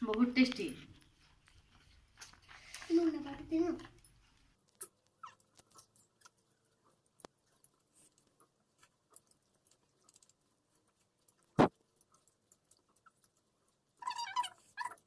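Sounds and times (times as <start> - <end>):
person chewing: 4.0 - 15.0.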